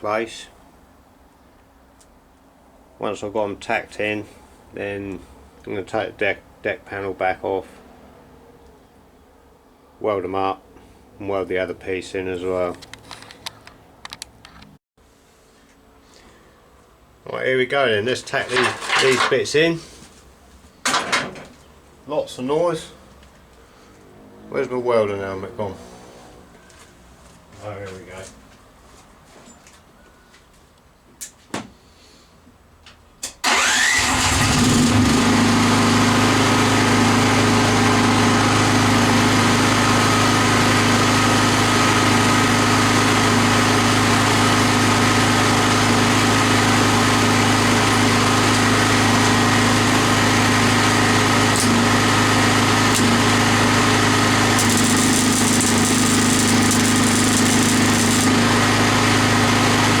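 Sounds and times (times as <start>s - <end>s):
machine humming: 41.8s - 60.0s.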